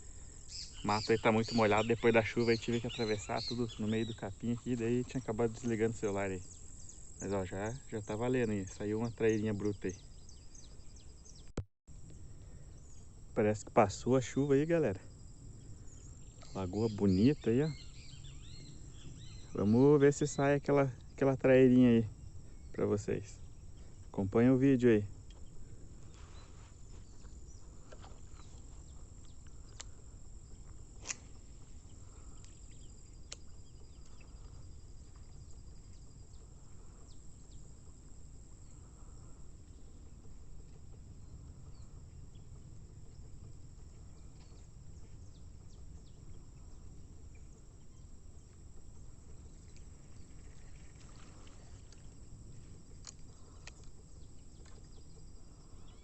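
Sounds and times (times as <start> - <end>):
insects droning: 0.0 - 56.0
low constant rumble: 0.0 - 56.0
faint clicks: 27.2 - 37.2, 42.1 - 56.0.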